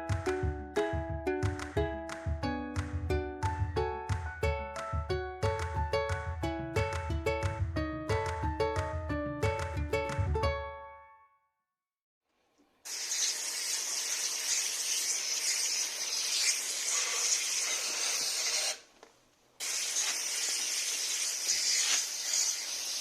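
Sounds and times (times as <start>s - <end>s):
spray hissing: 12.9s - 18.8s, 19.6s - 23.0s.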